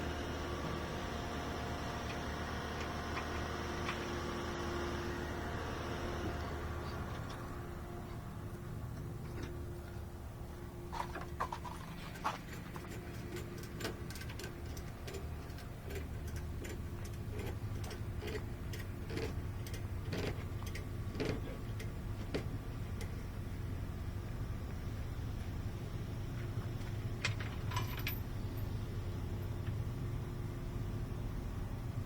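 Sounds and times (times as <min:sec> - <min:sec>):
truck engine idling: 0:00.0 - 0:32.0
light clicks and clinks: 0:27.3 - 0:28.3.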